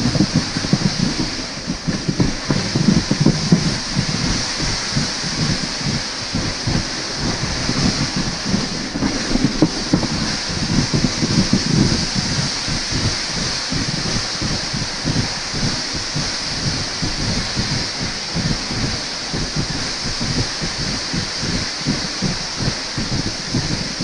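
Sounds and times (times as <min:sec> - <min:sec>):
steady high hiss: 0:00.0 - 0:24.0
wind buffeting microphone: 0:00.0 - 0:24.0.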